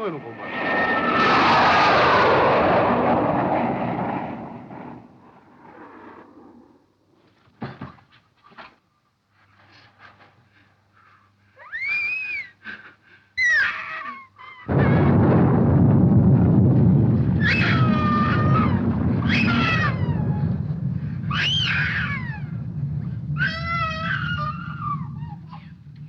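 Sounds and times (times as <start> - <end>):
thunder clap and rumble: 0.0 - 6.3, 14.7 - 26.0
high wailing cries: 17.4 - 25.8.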